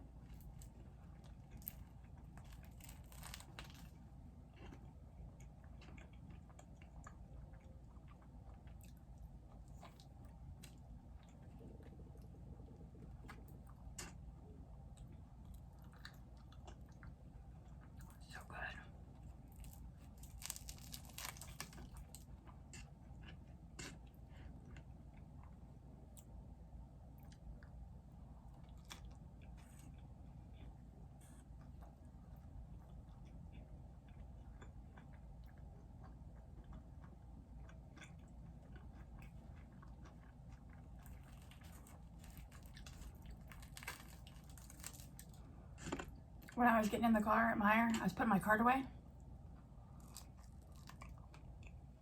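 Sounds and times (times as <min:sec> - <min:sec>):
person chewing crunchy food: 0:00.0 - 0:18.2, 0:19.0 - 0:25.7, 0:28.4 - 0:46.6, 0:49.4 - 0:52.0
steady low hum: 0:00.0 - 0:52.0.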